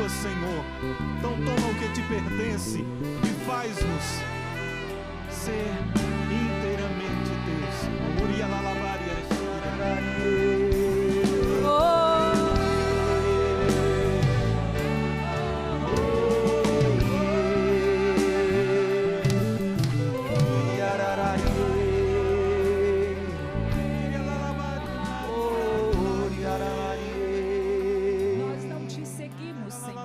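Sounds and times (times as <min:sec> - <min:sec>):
instrumental accompaniment: 0:00.0 - 0:30.0
person singing long held notes: 0:09.8 - 0:28.8.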